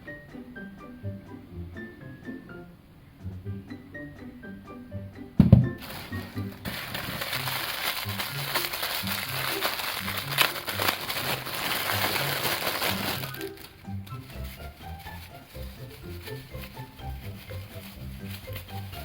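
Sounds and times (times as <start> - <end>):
background music: 0.0 - 19.0
low thump: 5.4 - 5.8
plastic packaging crinkling: 5.8 - 19.0.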